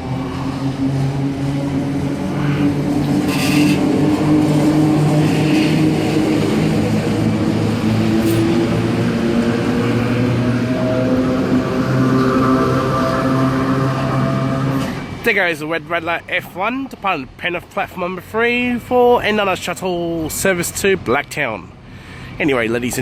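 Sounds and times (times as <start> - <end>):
electric train motors humming: 0.0 - 15.2
short hiss: 8.2 - 8.5.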